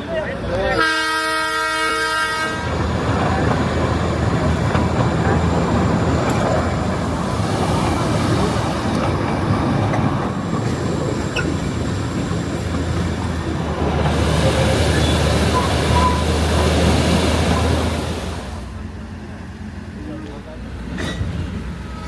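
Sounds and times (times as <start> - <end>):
train carriage rumbling: 0.0 - 22.0
train horn blast: 0.7 - 2.8.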